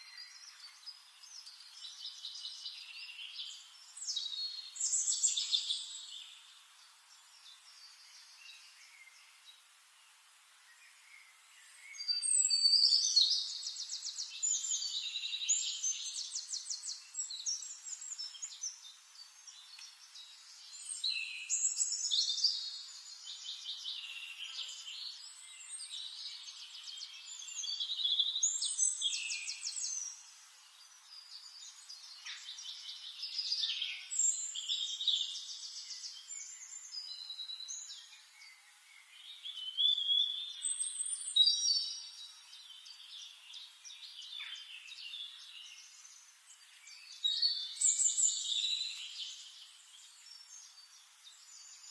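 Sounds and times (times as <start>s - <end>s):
songbirds singing: 0.0s - 51.9s.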